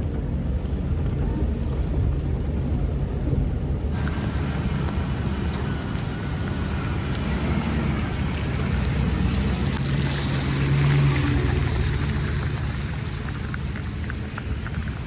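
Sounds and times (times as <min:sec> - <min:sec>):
van engine hum: 0:00.0 - 0:15.0
rain: 0:03.9 - 0:15.0
tyres hissing on wet road: 0:03.9 - 0:15.0.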